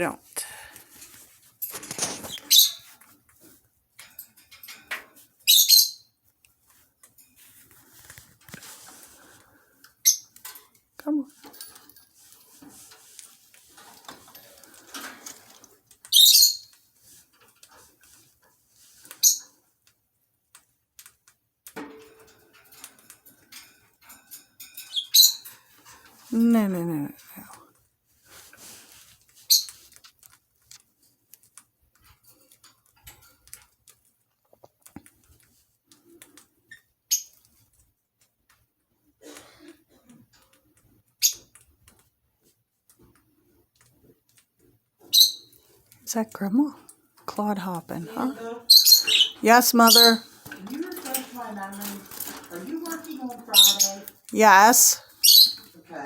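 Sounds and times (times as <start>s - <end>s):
faint rustling: 0.2s - 5.4s, 6.6s - 16.1s, 48.1s - 55.9s
bird clicks and scratches: 0.7s - 5.8s, 6.4s - 26.3s, 27.5s - 38.7s, 39.3s - 46.1s, 48.7s - 54.3s
budgerigar chirp: 48.7s - 50.2s.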